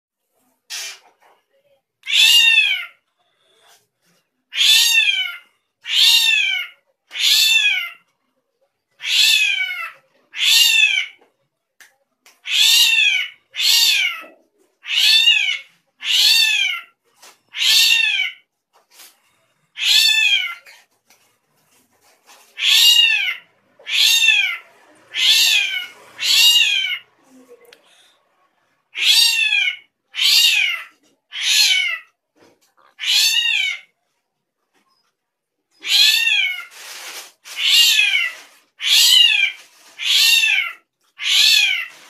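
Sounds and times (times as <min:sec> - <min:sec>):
bird mewing cat-like calls: 0:22.5 - 0:27.2.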